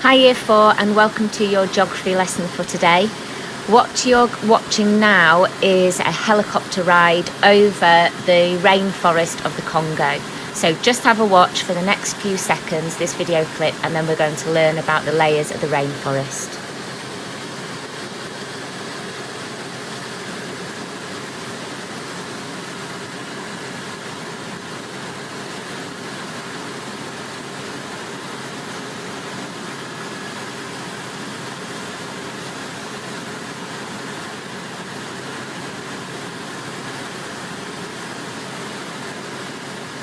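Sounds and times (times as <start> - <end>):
helicopter engine and rotor: 0.3 - 17.2.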